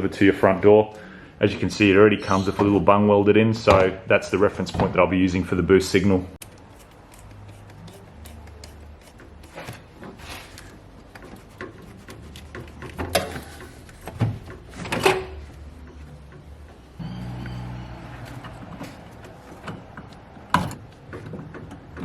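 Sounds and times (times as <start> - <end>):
parts knocking and clunking: 9.0 - 22.0
low steady hum: 15.8 - 20.8.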